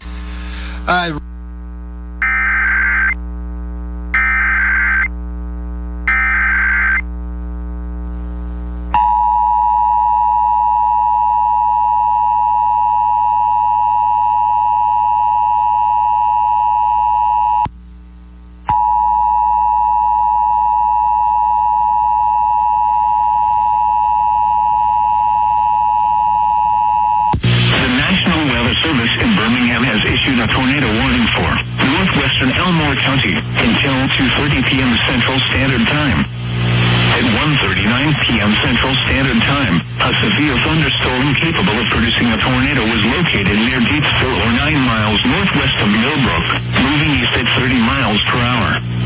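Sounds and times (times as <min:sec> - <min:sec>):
low hum: 0:36.3 - 0:37.4.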